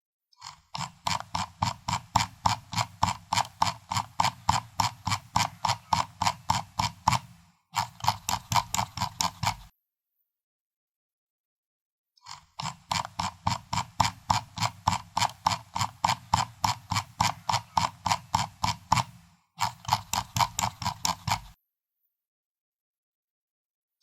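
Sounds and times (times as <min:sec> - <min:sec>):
mouse scroll wheel clicking: 0:00.4 - 0:09.7, 0:12.2 - 0:21.6.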